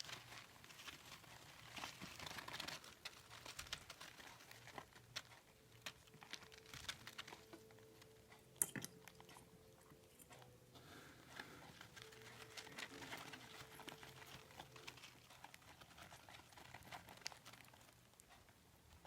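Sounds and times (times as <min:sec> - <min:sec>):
beak clicking and smacking: 0:01.8 - 0:10.6, 0:11.6 - 0:19.0
faint steady hum: 0:02.7 - 0:19.0.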